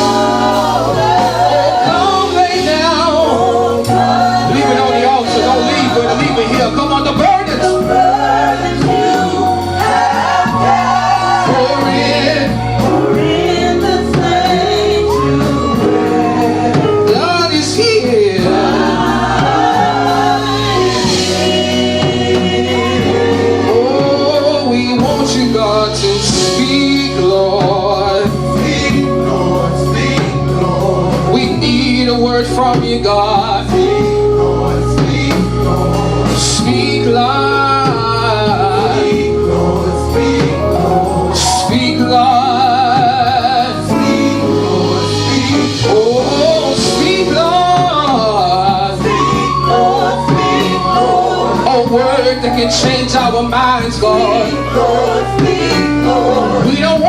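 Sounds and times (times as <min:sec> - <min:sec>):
accompaniment chords: 0:00.0 - 0:57.0
bass line: 0:00.0 - 0:57.0
gospel singing: 0:00.0 - 0:57.0.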